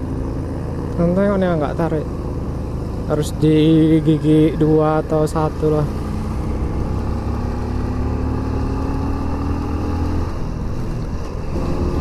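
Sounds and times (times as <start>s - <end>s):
motorcycle engine climbing: 6.4s - 12.0s.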